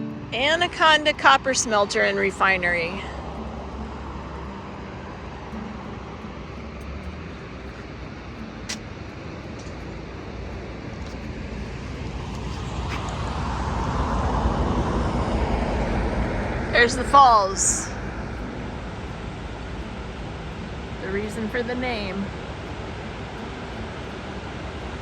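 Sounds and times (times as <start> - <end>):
vehicle engine and road noise: 0.0 - 25.0
sharp click: 8.7 - 9.0.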